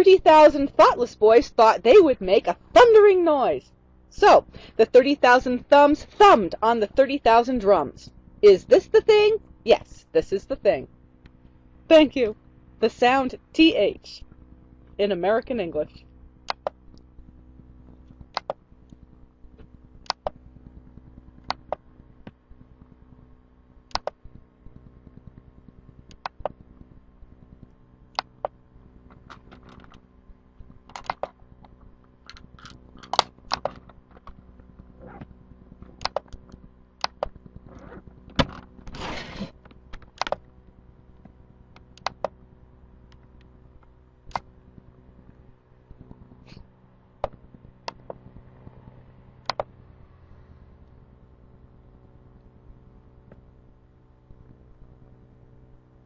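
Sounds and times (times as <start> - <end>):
faint steady hum: 0.0 - 56.0
sharp clicks: 16.5 - 17.1, 18.1 - 20.4, 23.9 - 24.4, 26.1 - 26.6, 28.1 - 30.0, 35.8 - 37.4, 39.9 - 40.4, 41.7 - 42.4, 49.4 - 49.7.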